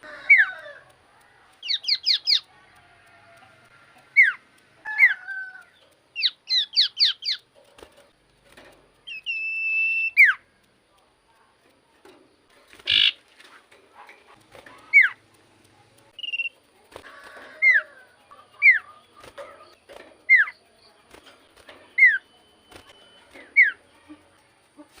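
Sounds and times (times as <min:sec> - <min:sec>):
bird whistling descending notes: 0:09.1 - 0:10.4.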